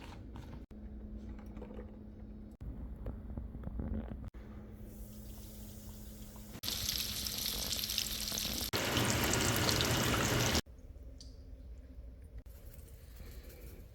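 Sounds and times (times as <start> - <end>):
eggs sizzling in hot oil: 4.9 - 10.6.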